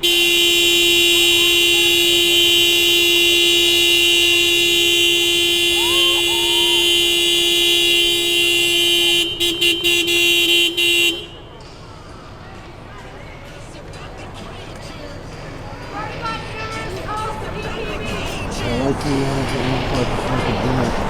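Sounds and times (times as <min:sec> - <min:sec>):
car horn blast: 0:00.0 - 0:11.6
car horn short toots: 0:00.0 - 0:11.6.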